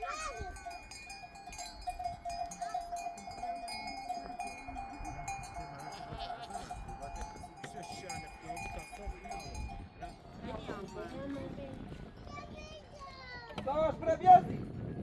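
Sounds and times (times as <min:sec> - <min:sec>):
faint sheep and goats bleating: 0:00.0 - 0:10.2
animal bells clinking: 0:00.0 - 0:12.2.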